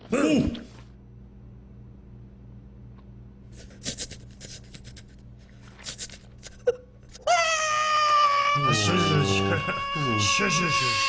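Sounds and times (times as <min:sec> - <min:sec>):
cartoon character crying wail: 0:07.2 - 0:11.0.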